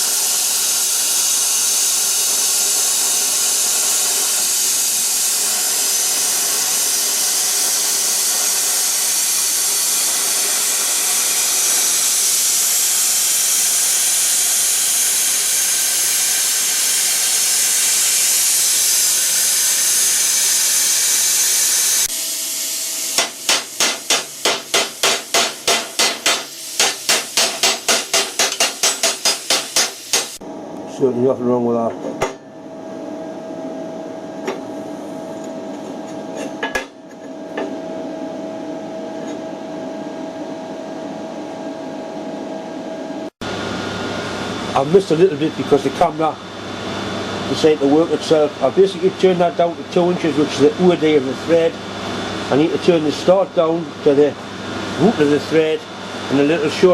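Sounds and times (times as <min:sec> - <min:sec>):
plasma cutter hissing: 0:00.0 - 0:30.4
sharp metal knocks: 0:23.2 - 0:30.4.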